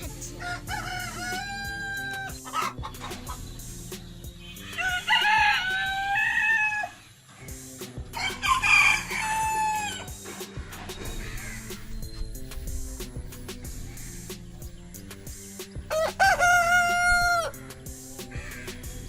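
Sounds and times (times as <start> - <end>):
rooster crowing: 0.4 - 2.8, 4.6 - 7.0, 8.2 - 10.1, 15.9 - 17.6.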